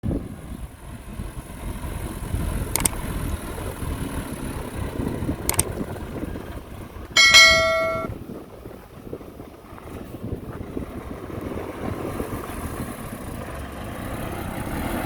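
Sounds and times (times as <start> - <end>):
wind: 0.0 - 15.0
bell-like metallic ring: 7.2 - 8.1.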